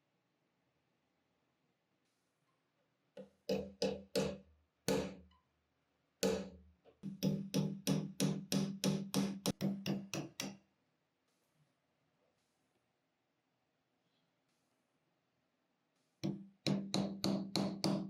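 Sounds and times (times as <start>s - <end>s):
hammer tapping metal punch: 6.2s - 10.6s, 16.2s - 18.0s.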